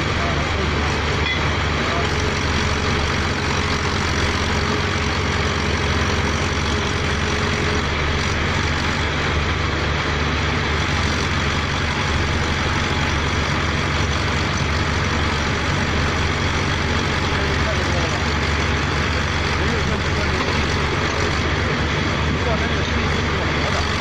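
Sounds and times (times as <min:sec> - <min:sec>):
heavy engine running steadily: 0:00.0 - 0:24.0.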